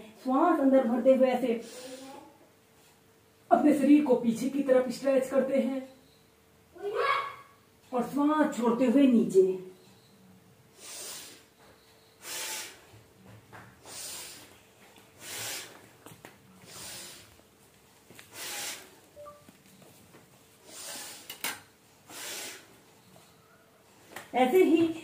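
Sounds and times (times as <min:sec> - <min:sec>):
woman breathing deeply: 0:10.7 - 0:11.5, 0:13.8 - 0:14.6, 0:15.2 - 0:15.8, 0:16.6 - 0:17.4, 0:20.6 - 0:21.4, 0:22.1 - 0:22.8.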